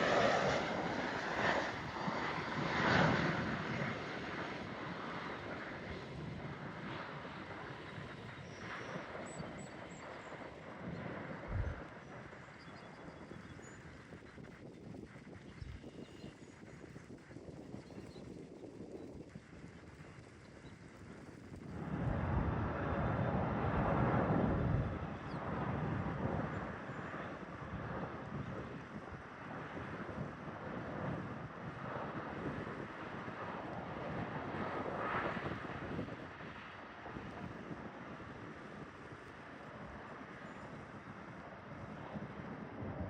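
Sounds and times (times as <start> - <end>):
jet engines roaring: 0.0 - 12.4, 21.0 - 43.0
wind buffeting microphone: 0.0 - 43.0.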